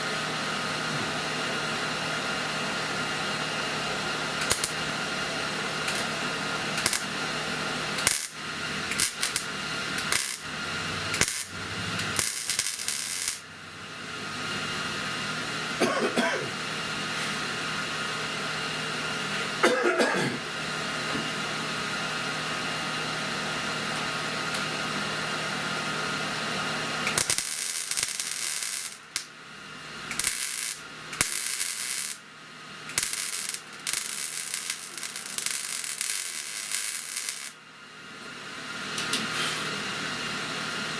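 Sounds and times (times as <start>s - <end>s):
steady fan hum: 0.0s - 40.9s
welding crackle and sizzle: 4.3s - 4.9s, 5.8s - 6.2s, 6.8s - 7.2s, 8.0s - 13.5s, 27.0s - 29.3s, 30.0s - 32.3s, 32.9s - 37.6s.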